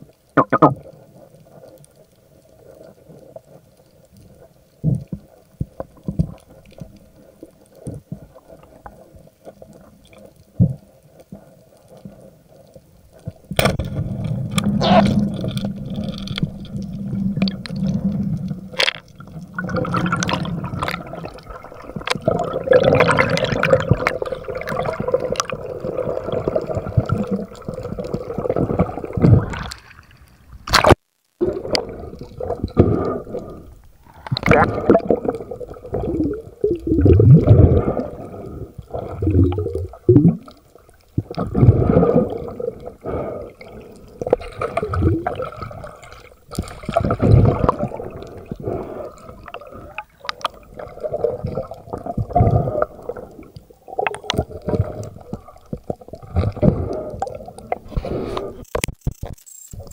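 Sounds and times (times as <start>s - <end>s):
water sloshing and gurgling: 13.1s - 59.9s.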